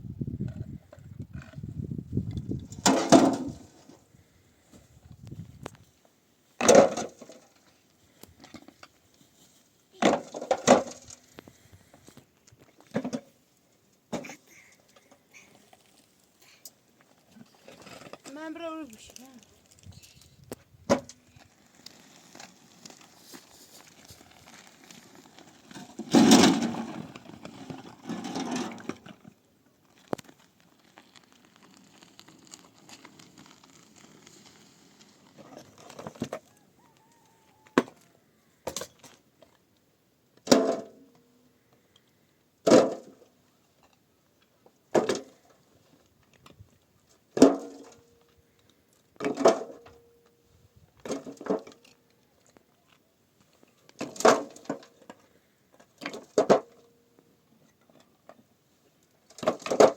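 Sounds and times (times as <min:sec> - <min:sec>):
rustling and scraping: 0:00.4 - 0:39.6.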